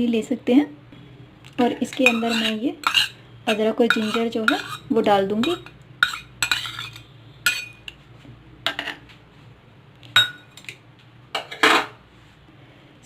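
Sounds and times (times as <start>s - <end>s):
metal utensil clinking on pot: 1.8s - 7.9s, 10.2s - 10.7s.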